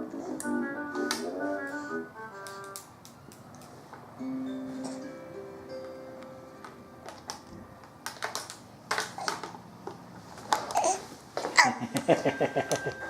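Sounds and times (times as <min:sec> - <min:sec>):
baby babbling: 0:10.7 - 0:11.0.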